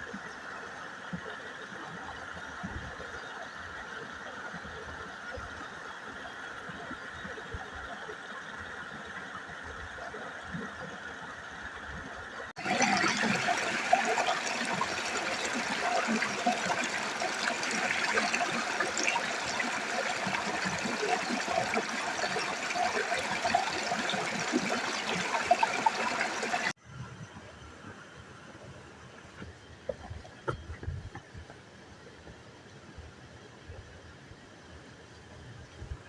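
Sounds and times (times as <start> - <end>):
mountain stream rushing and splashing: 12.6 - 26.8.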